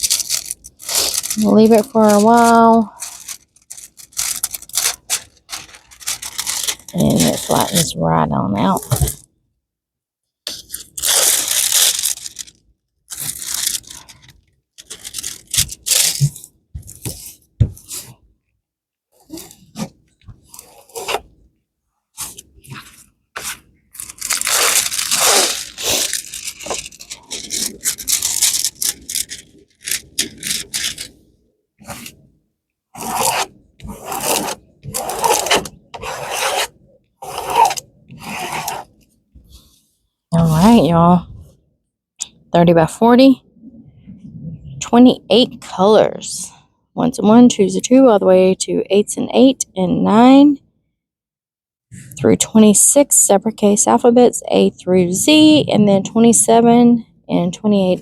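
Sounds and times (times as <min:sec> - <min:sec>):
plastic packaging rustling: 0:00.0 - 0:08.0, 0:10.7 - 0:17.3, 0:22.8 - 0:31.2, 0:33.0 - 0:35.8.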